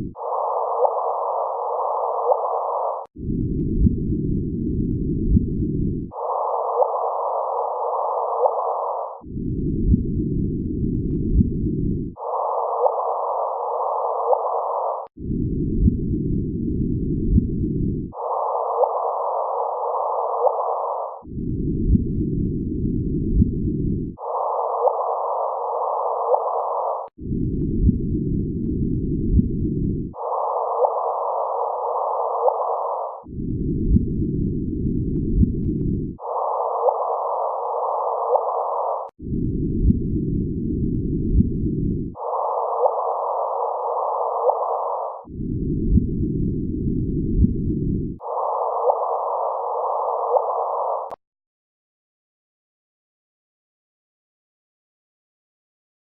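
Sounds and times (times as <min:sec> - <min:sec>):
hissy gravitational wave chirp: 0:00.0 - 0:03.1, 0:06.1 - 0:09.2, 0:12.1 - 0:15.1, 0:18.1 - 0:21.2, 0:24.2 - 0:27.1, 0:30.2 - 0:33.3, 0:36.2 - 0:39.2, 0:42.2 - 0:45.3, 0:48.2 - 0:51.2
low rumble: 0:02.7 - 0:08.7, 0:09.3 - 0:14.2, 0:15.2 - 0:18.4, 0:21.3 - 0:24.2, 0:27.2 - 0:32.4, 0:33.2 - 0:50.9.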